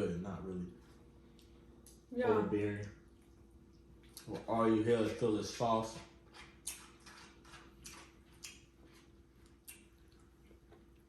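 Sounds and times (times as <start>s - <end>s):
faint hum: 0.0s - 11.0s
chewing clicks and smacks: 2.8s - 4.3s, 6.3s - 11.0s.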